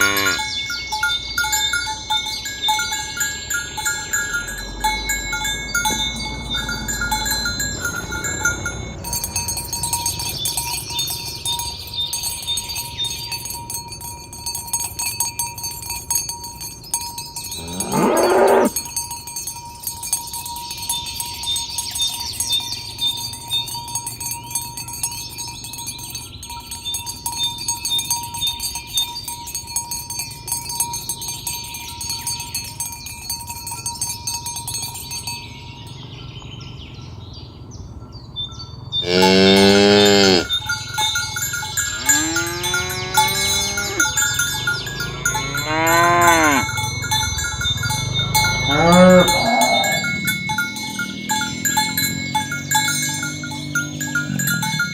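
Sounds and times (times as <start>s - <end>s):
cow mooing: 0.0s - 0.6s, 17.6s - 18.8s, 39.0s - 40.6s, 41.9s - 46.8s, 48.0s - 54.9s
high ringing tones: 0.0s - 37.2s, 38.5s - 54.9s
fast ticking: 40.5s - 54.9s.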